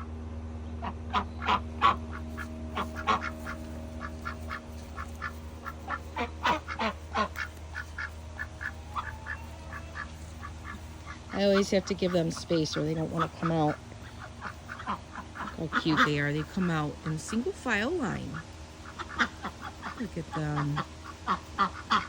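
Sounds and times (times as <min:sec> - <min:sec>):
steady low hum: 0:00.0 - 0:22.0
ducks quacking: 0:00.7 - 0:22.0.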